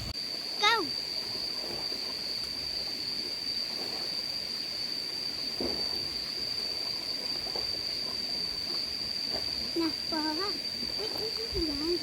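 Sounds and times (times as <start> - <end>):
high-pitched insect drone: 0.0 - 12.0.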